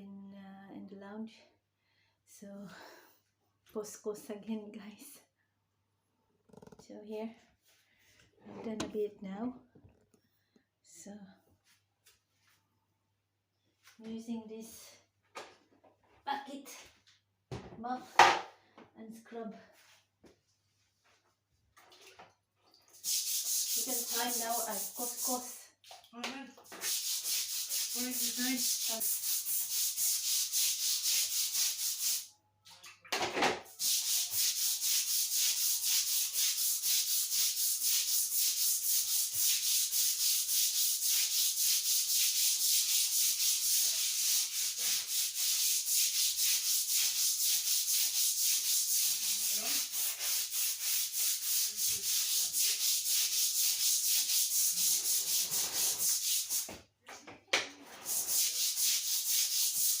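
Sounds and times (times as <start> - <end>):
scrub brush scrubbing floor: 22.9 - 25.6, 26.5 - 32.3, 33.6 - 56.8, 57.7 - 60.0.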